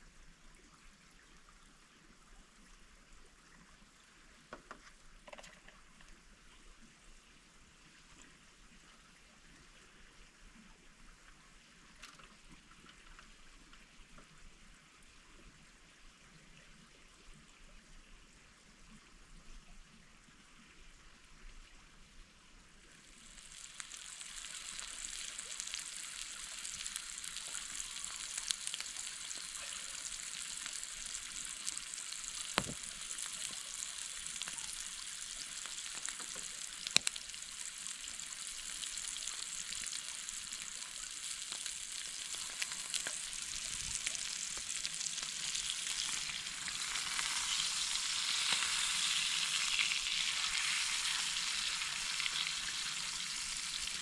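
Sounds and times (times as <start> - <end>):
food sizzling in a pan: 22.9 - 54.0.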